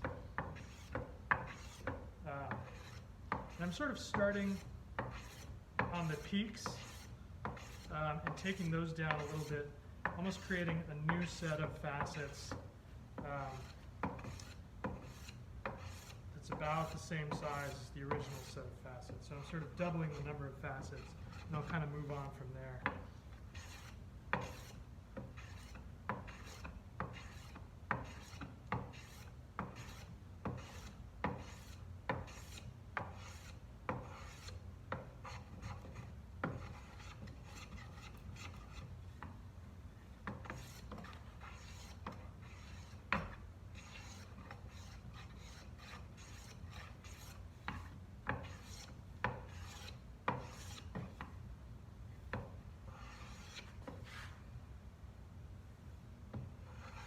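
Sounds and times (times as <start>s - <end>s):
hand plane scraping along wood: 0.0s - 12.6s, 13.3s - 18.7s, 19.3s - 39.4s, 40.2s - 51.4s, 52.4s - 54.4s, 56.4s - 57.0s.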